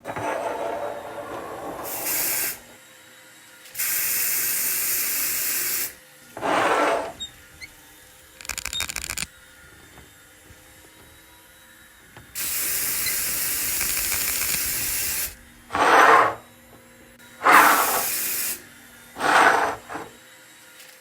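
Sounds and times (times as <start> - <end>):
hiss bursts: 2.0 - 2.6, 3.8 - 6.0, 12.4 - 15.4, 17.4 - 18.6
rapid ratchet-like clicks: 8.4 - 9.3, 12.9 - 15.3.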